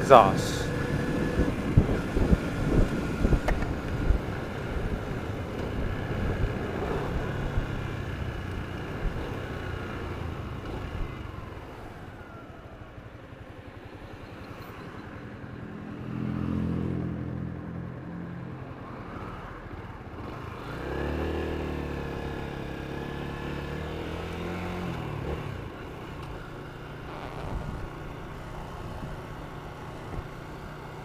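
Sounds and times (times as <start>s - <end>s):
motorcycle engine running: 20.2s - 31.0s.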